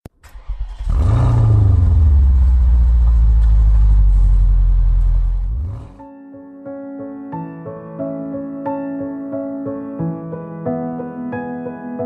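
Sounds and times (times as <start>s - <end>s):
vehicle engine low rumble: 0.9s - 6.0s.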